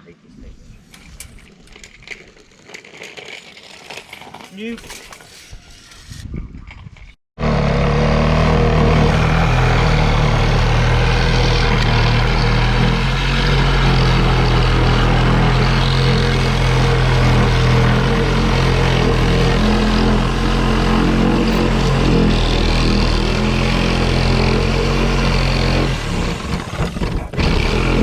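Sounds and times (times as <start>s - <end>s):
motor running loudly: 7.4s - 28.0s.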